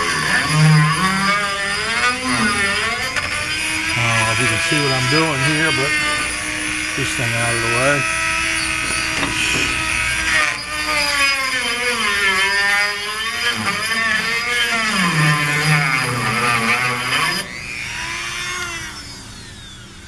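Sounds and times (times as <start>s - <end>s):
rotary tool whining: 0.0s - 20.0s.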